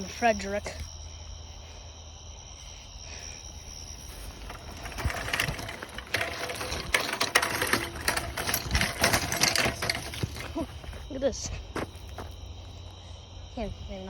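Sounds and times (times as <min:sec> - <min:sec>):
mechanical rattling and clicking: 0:04.3 - 0:11.1.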